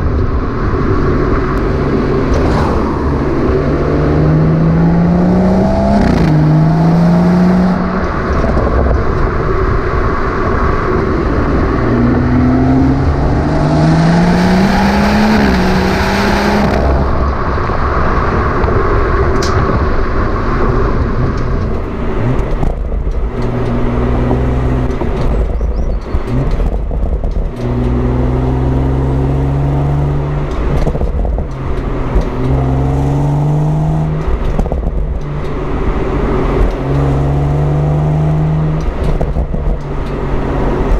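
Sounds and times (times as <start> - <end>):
car engine accelerating: 0.0 - 40.9.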